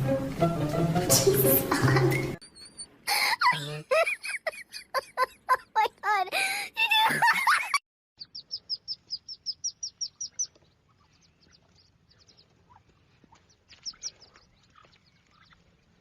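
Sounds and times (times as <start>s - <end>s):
animal high-pitched chirps: 2.4s - 3.0s, 8.2s - 12.8s.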